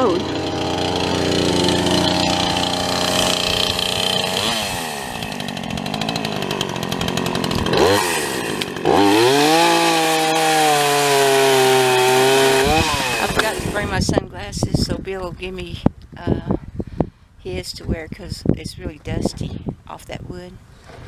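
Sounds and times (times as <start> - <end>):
chainsaw engine revving: 0.0 - 13.9.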